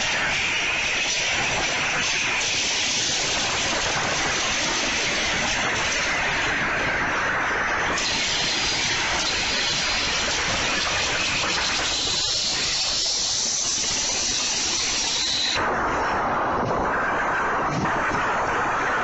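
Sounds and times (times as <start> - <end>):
loud hissing rush: 0.0 - 19.0
thin high whistle: 11.4 - 15.6.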